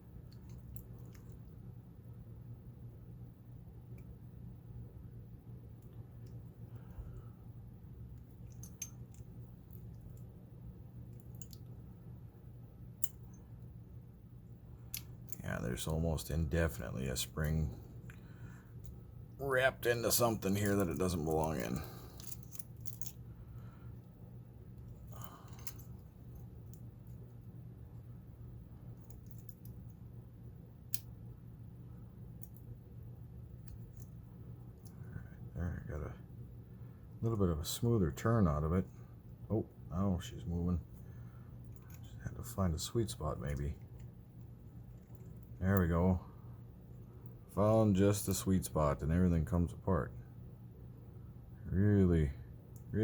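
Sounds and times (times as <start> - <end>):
low hum: 0.0 - 53.0
metallic clicks of lock picking: 11.1 - 11.7, 13.0 - 13.4, 20.6 - 23.2, 25.5 - 26.0, 29.0 - 29.8, 33.6 - 34.2.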